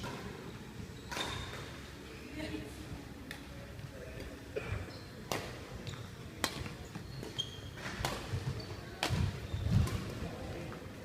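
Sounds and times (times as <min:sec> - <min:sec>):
shoe squeaks: 0:00.8 - 0:01.8, 0:05.8 - 0:06.2, 0:06.8 - 0:09.8
racket hitting shuttlecock: 0:05.3 - 0:05.6, 0:06.4 - 0:10.2.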